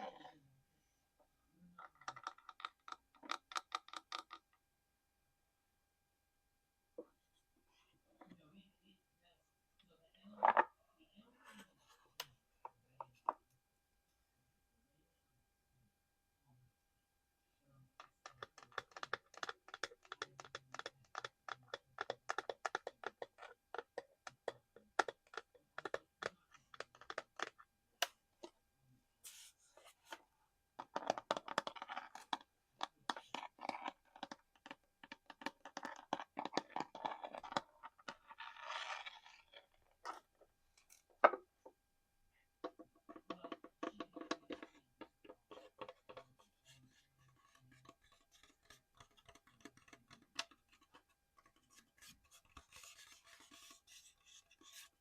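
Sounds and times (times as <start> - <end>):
fingernail tapping on hard objects: 18.2 - 27.6
scratching and scraping: 30.8 - 41.4, 43.2 - 55.0.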